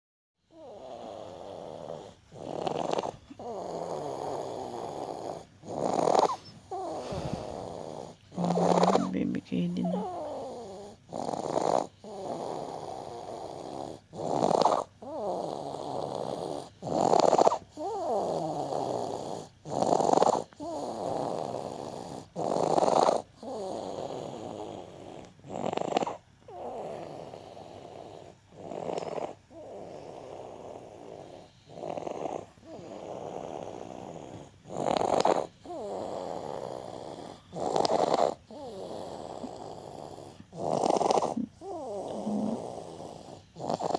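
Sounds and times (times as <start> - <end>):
wheezing rattling breathing: 6.2 - 9.0.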